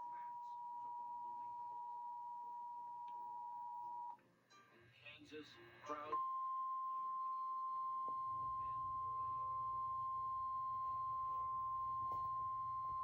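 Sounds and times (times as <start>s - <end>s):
faint low hum: 0.0s - 13.0s
high warning alarm beep: 6.2s - 13.0s.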